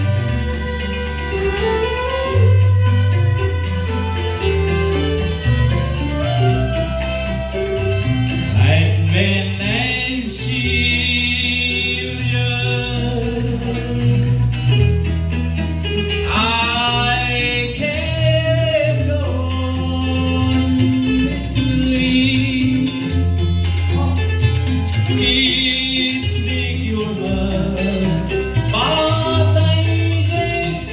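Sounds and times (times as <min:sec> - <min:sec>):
bass line: 0:00.0 - 0:30.9
plucked strings: 0:00.0 - 0:30.9
person singing: 0:08.4 - 0:14.6, 0:16.3 - 0:24.3, 0:25.1 - 0:30.9.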